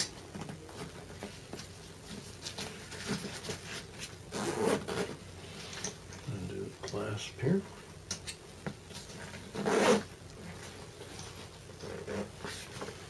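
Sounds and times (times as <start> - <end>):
fabric rubbing and rustling: 0.8 - 5.8, 9.0 - 13.0
zipper being pulled: 4.3 - 5.2, 9.5 - 10.1, 11.8 - 12.7.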